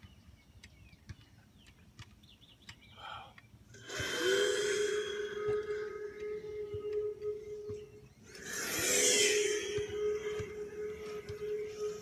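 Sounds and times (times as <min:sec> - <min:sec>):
low steady droning tone: 0:03.8 - 0:12.0
loud hiss: 0:08.4 - 0:10.0.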